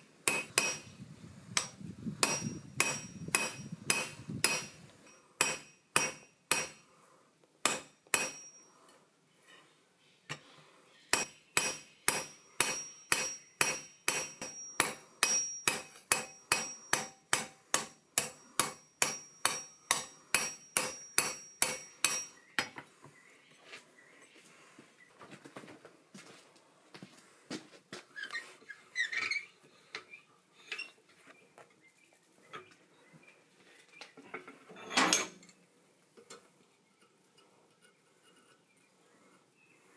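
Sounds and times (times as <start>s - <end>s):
hammer striking steel on anvil: 0.2s - 0.9s, 1.6s - 6.9s, 7.6s - 8.7s, 11.1s - 22.8s.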